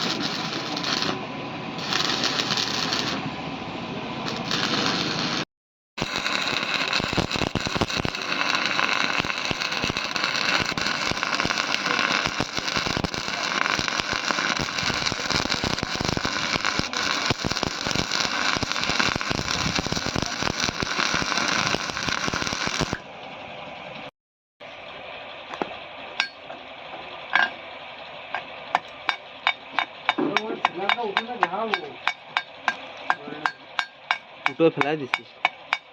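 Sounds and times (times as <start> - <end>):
arc welding crackle and sizzle: 0.0 - 1.2, 1.8 - 3.2, 4.2 - 23.0.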